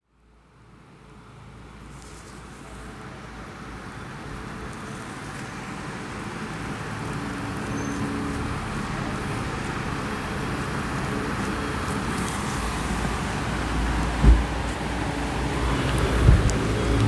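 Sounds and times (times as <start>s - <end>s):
steady rushing noise: 11.0s - 17.0s.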